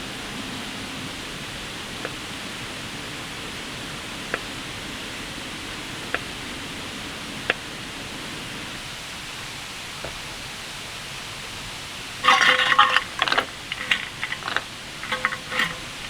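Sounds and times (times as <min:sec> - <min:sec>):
light clinks: 0:12.2 - 0:16.0.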